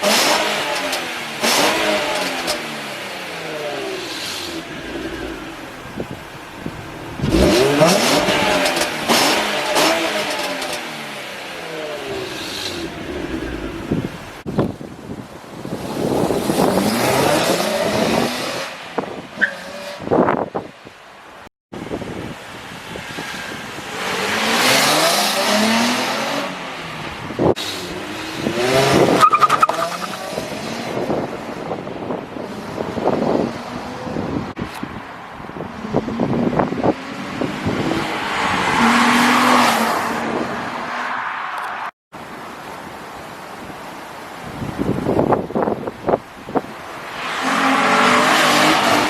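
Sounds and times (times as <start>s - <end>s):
car engine idling and revving: 0.0s - 14.5s
exhaust pulses: 4.2s - 9.9s, 11.9s - 14.5s.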